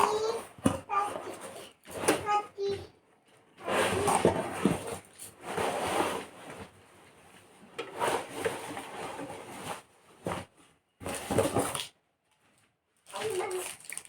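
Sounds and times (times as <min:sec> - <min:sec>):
packaging rustling: 0:13.1 - 0:14.0.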